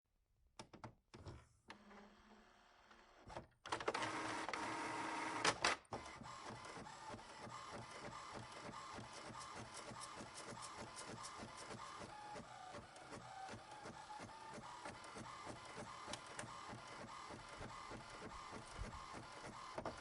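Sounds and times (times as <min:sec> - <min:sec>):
printer running: 0:03.7 - 0:20.0
printer click: 0:13.7 - 0:17.4.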